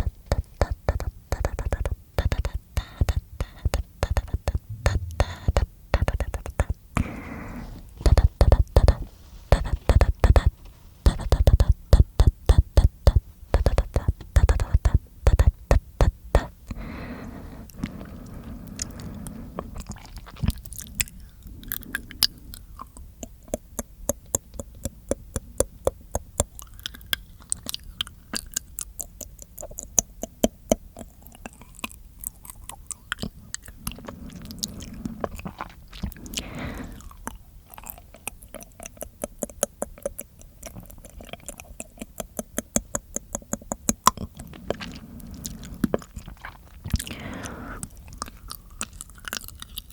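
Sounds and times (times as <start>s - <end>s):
breathy mouth sounds: 0.0s - 49.9s
wet tongue and lip clicks: 18.7s - 49.9s.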